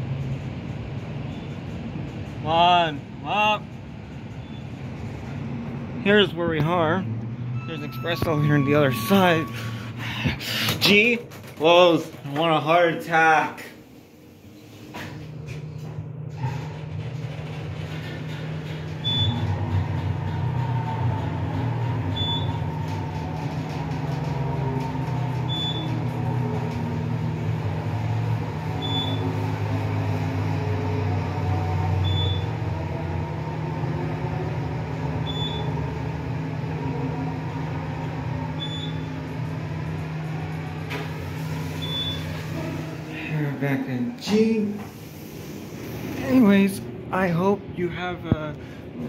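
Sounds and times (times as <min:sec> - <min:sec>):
elevator machine hum: 0:00.0 - 0:49.0
short high beep: 0:07.6 - 0:09.7.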